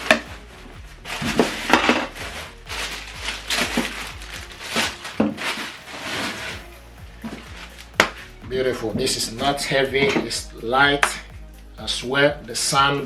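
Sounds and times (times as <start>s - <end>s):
packaging rustling and crinkling: 0.0s - 8.2s.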